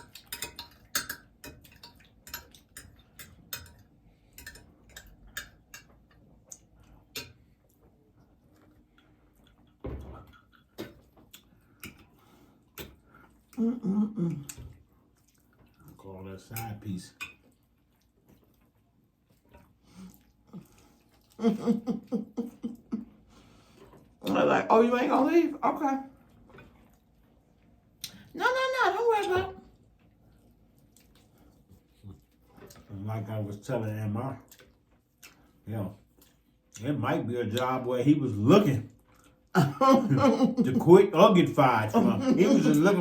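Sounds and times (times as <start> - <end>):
chewing and lip smacks: 5.9 - 13.6, 14.3 - 16.0, 17.3 - 21.4, 26.2 - 28.3, 29.7 - 32.9, 34.4 - 36.8, 38.9 - 39.5
person laughing: 21.4 - 23.1, 39.6 - 40.8, 42.0 - 43.0.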